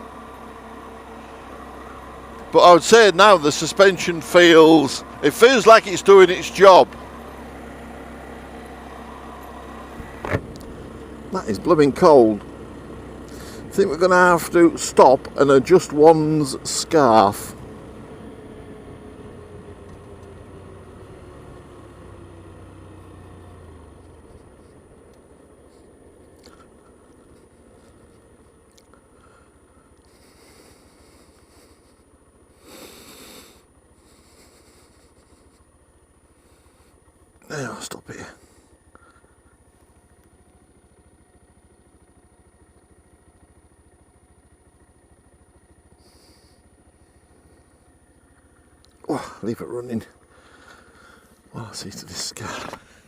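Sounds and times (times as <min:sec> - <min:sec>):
motorcycle engine running: 0:00.0 - 0:53.0
road and wind noise: 0:00.0 - 0:53.0
faint clicks: 0:28.0 - 0:29.0, 0:48.3 - 0:49.0.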